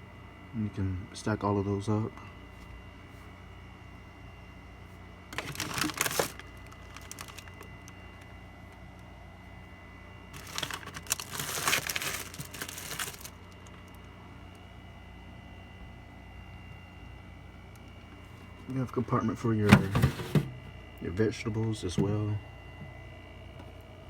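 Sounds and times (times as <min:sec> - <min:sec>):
fridge shelf rattling: 0:05.4 - 0:07.6, 0:10.4 - 0:13.9, 0:19.6 - 0:20.6.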